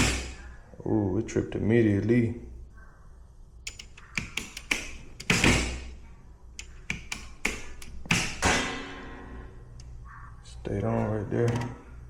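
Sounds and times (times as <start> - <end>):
circuit breaker clicks and clacks: 3.7 - 5.9, 6.6 - 8.7, 10.8 - 11.8.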